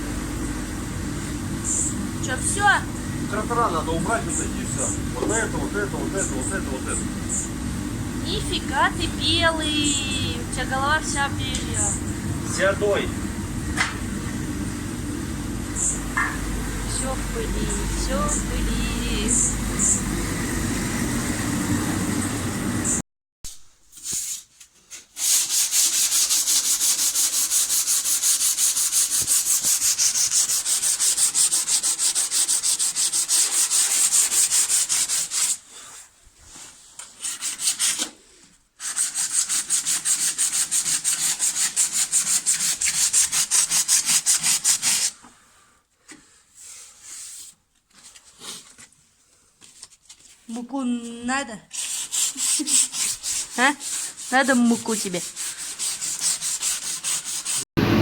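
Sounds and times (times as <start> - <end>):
sandpaper rubbing car panel: 24.0 - 35.7, 37.2 - 38.2, 38.8 - 45.2, 51.7 - 57.6.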